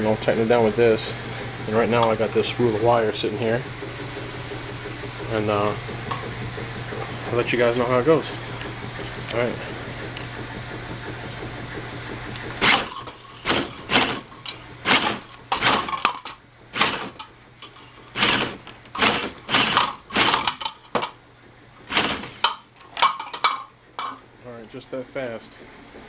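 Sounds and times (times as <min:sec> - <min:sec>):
machine low hum: 0:00.0 - 0:26.0
wire stripper rasping bursts: 0:03.7 - 0:21.1, 0:21.8 - 0:22.8.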